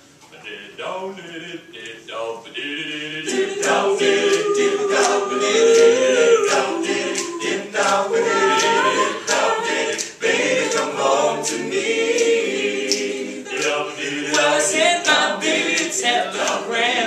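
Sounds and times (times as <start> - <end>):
men singing in close harmony: 0.4 - 17.0
percussive clicks: 12.1 - 16.6.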